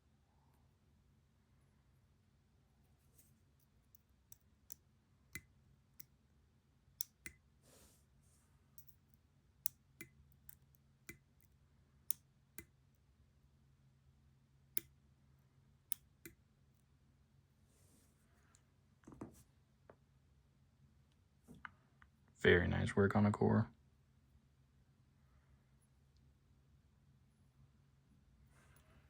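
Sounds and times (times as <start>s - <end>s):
faint low hum: 0.0s - 29.0s
small metal parts clicking: 8.8s - 9.2s.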